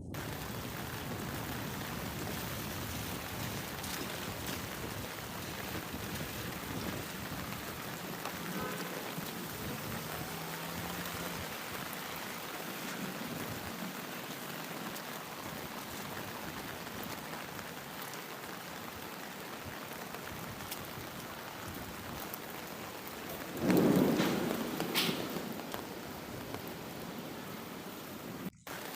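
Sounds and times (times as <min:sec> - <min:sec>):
loud rumble of thunder: 0:00.0 - 0:15.9, 0:21.6 - 0:28.5
heavy rain falling: 0:00.0 - 0:28.9.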